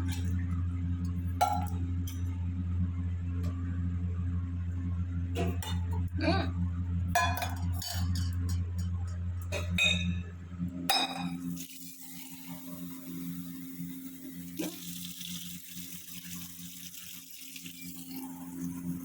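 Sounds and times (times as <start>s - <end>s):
low electrical hum: 0.0s - 19.0s
glass and dishes clinking: 7.2s - 9.0s, 9.6s - 10.2s, 10.9s - 11.4s.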